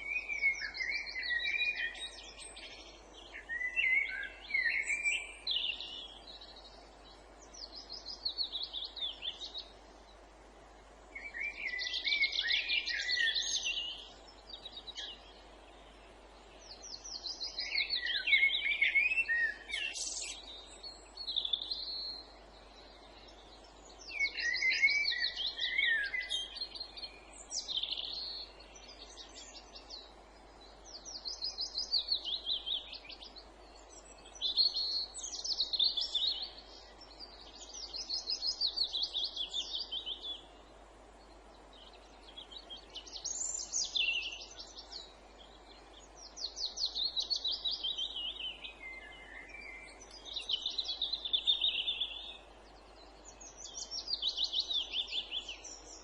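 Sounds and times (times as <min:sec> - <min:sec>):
faint background hiss: 0:00.0 - 0:56.0
songbird trilling: 0:19.0 - 0:20.4.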